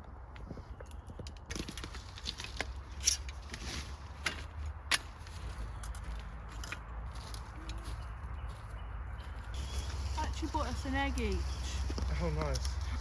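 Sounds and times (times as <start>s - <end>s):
rustling: 1.5s - 8.0s, 9.3s - 13.0s.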